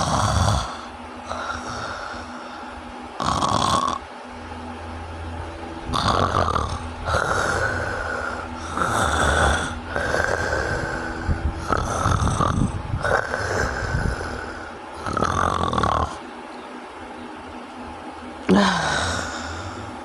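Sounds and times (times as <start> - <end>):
person snoring in rattling breaths: 0.0 - 4.0, 5.9 - 16.2
steady low rumble: 0.0 - 20.0.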